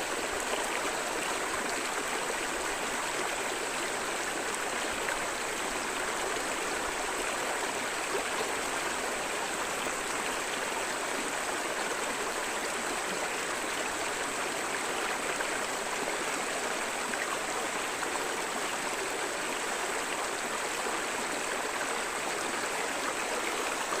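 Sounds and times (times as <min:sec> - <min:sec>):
river water flowing over stones: 0:00.0 - 0:24.0.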